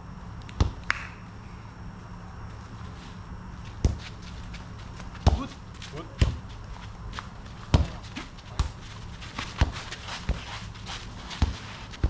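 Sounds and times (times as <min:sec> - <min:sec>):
ball kicked and bouncing: 0:00.6 - 0:00.9, 0:03.7 - 0:04.2, 0:04.9 - 0:06.6, 0:07.6 - 0:10.5, 0:11.3 - 0:12.0.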